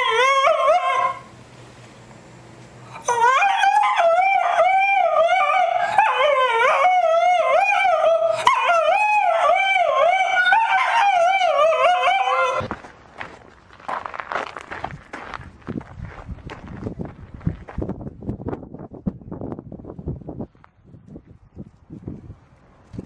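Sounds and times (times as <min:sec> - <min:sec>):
dog howling: 0:00.0 - 0:01.3, 0:03.0 - 0:12.7.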